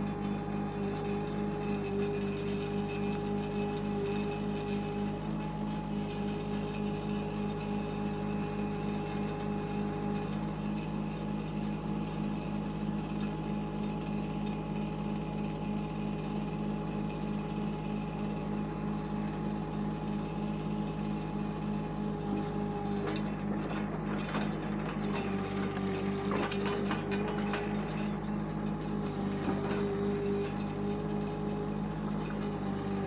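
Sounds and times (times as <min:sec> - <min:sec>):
diesel engine running: 0:22.0 - 0:33.0
engine whine: 0:22.2 - 0:33.0.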